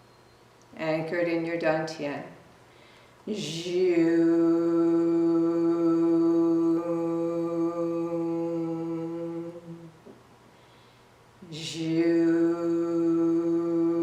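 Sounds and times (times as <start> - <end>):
quiet breath: 2.6 - 3.3, 9.8 - 11.3
woman chanting a humming tone: 3.3 - 10.1, 11.4 - 14.0.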